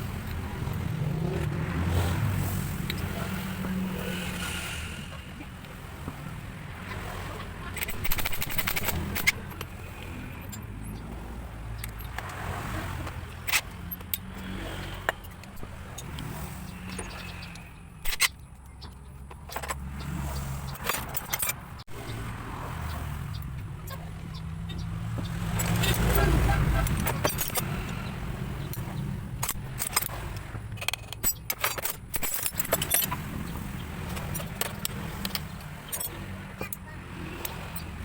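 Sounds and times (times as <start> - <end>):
metal tools clinking and knocking: 7.6 - 11.1, 13.0 - 20.0, 20.7 - 21.8, 23.6 - 38.0.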